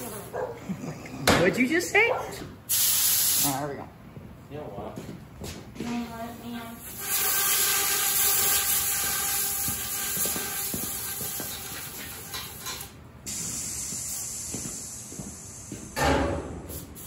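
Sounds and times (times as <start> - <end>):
loud hiss: 2.7 - 3.7, 6.8 - 17.0.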